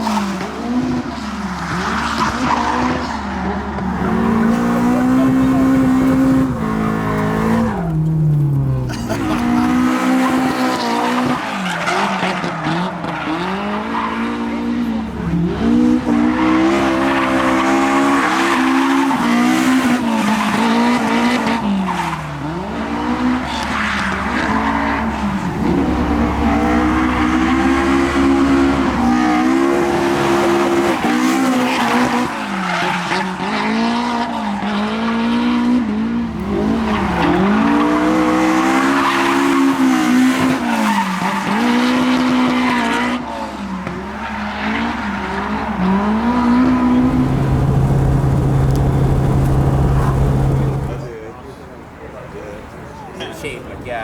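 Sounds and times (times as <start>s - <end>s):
car engine revving: 3.6s - 11.4s, 14.6s - 32.4s, 44.4s - 51.2s.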